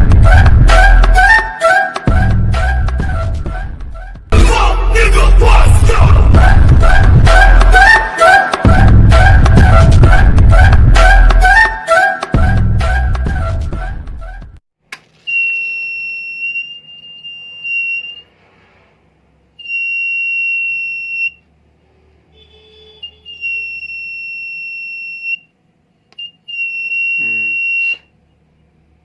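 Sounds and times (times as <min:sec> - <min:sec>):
fire alarm buzzer tone: 0:15.3 - 0:18.3, 0:19.6 - 0:21.4, 0:22.4 - 0:25.5, 0:26.2 - 0:28.1.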